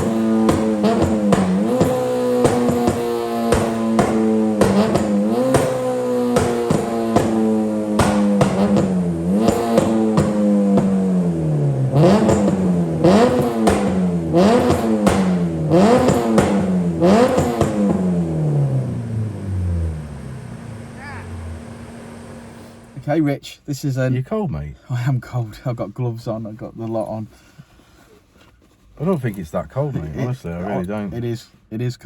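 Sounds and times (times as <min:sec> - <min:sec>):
background music with steady beat: 0:00.0 - 0:18.8
car engine revving: 0:00.0 - 0:23.2.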